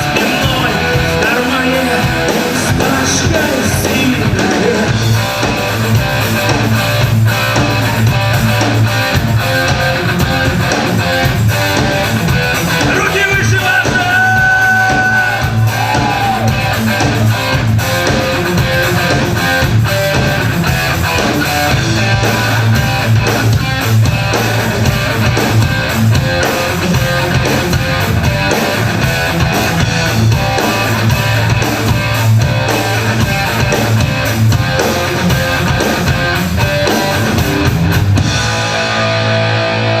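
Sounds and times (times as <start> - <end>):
drum kit: 0.0 - 40.0
strummed electric guitars: 0.0 - 40.0.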